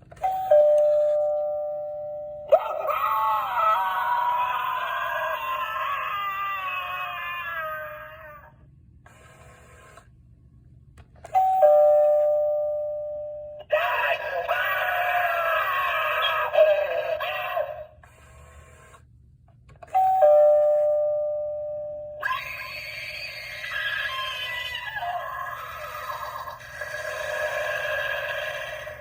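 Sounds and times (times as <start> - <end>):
warbling voice-like clip: 22.2 - 29.0.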